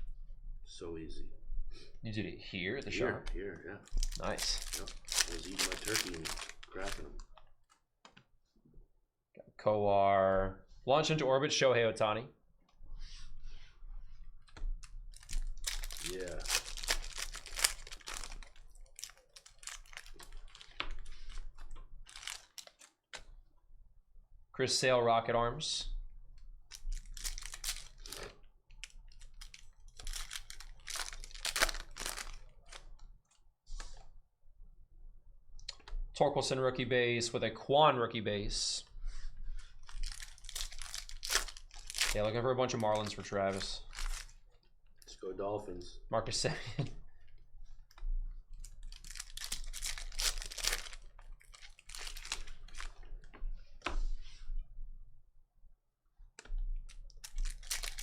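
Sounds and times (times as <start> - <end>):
cards and wrappers crinkling: 3.8 - 7.8, 14.8 - 23.2, 26.7 - 33.0, 39.6 - 44.4, 48.5 - 53.1, 56.9 - 58.0.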